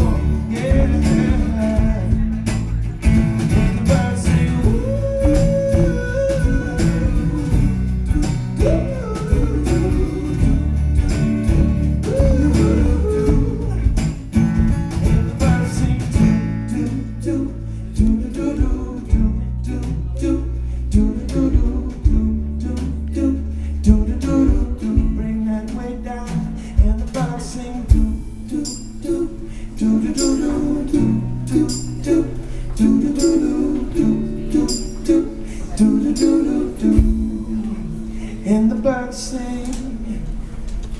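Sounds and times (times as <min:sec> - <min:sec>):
man singing: 0:00.0 - 0:02.8, 0:03.4 - 0:14.2, 0:15.0 - 0:40.4
strummed acoustic guitar: 0:00.0 - 0:20.2.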